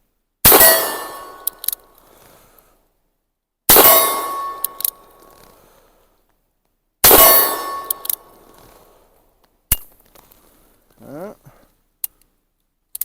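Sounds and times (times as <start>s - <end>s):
revolver gunshot: 0.5s - 1.6s, 3.7s - 5.2s, 7.0s - 8.7s
metallic ringing: 0.5s - 1.9s, 3.7s - 5.4s, 7.1s - 8.8s.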